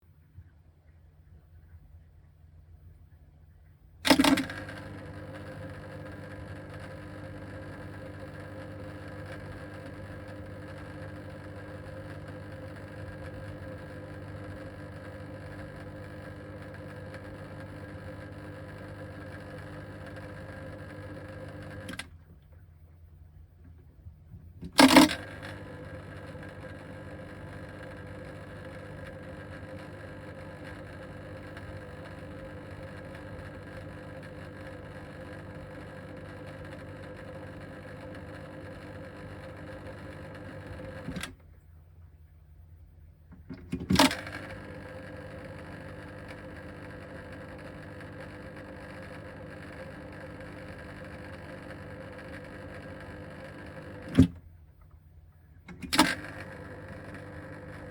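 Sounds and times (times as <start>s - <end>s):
filter motor buzzing: 55.7s - 57.9s.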